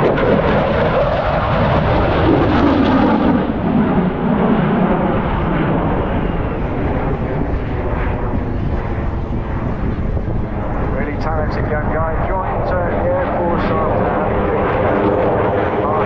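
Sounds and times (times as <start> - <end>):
loud jet passing: 0.0 - 16.0.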